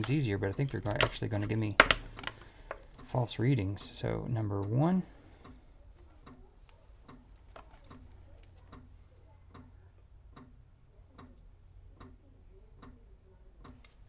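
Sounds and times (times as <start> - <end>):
faint ticking: 0.0 - 7.3.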